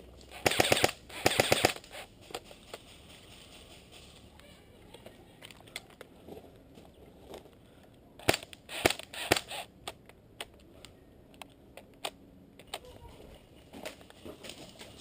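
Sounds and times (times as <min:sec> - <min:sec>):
airsoft gun shots: 0:00.3 - 0:01.9, 0:08.2 - 0:09.6.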